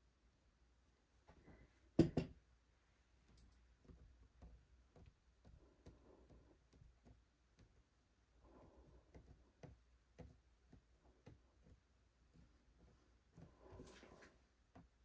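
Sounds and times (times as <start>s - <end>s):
soft rustle: 12.4s - 14.6s.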